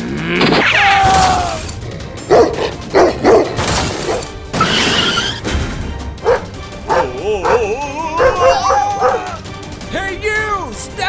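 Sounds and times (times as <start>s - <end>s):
background music: 0.0s - 11.0s
dog barking: 2.3s - 4.3s, 6.2s - 9.4s.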